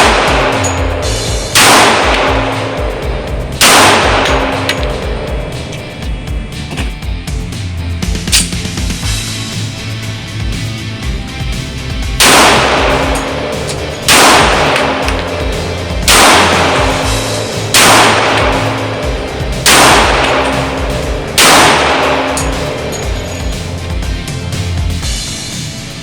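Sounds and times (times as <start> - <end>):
pistol shots ringing: 0.0 - 3.0, 3.6 - 6.0, 8.3 - 8.6, 12.2 - 23.7
background music: 0.0 - 26.0.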